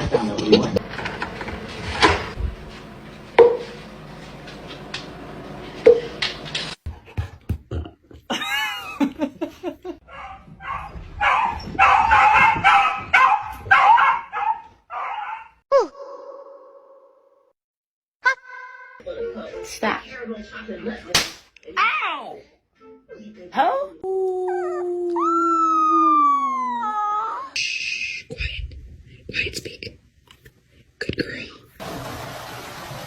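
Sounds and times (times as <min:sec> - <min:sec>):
dog barking: 0:10.1 - 0:15.6
dog howling: 0:13.7 - 0:15.6, 0:24.0 - 0:27.6.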